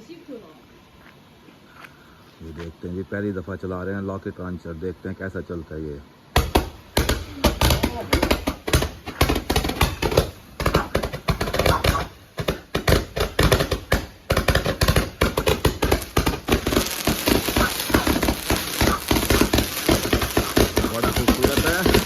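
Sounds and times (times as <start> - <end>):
firework pops and bangs: 6.4 - 22.0.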